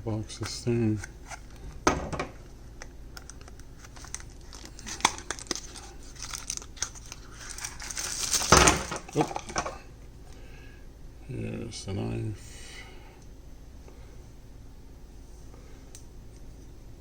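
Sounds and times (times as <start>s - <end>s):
packaging crinkling and tearing: 3.2s - 9.6s.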